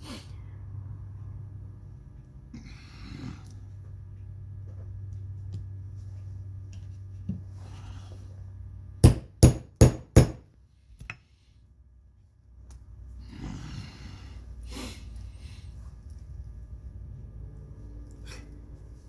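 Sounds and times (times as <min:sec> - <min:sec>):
hammer striking metal snap tool: 0:09.0 - 0:10.4.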